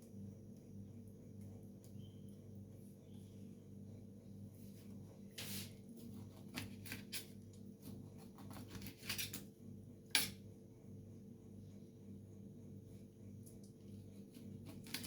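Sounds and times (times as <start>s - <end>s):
steady low hum: 0.0s - 15.0s
citrus fruit being peeled: 13.7s - 15.0s.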